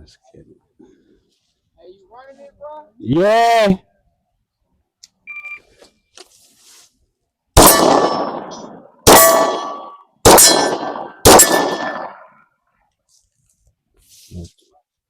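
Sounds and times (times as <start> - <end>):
shot timer beep: 5.3 - 5.6
pistol shots: 7.6 - 12.3
steel target ringing: 7.6 - 12.3.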